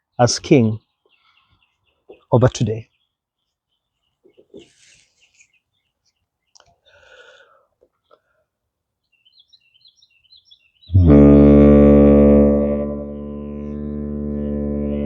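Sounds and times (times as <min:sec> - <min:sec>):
faint bird chirps: 0:00.0 - 0:11.0
didgeridoo drone: 0:10.9 - 0:15.0.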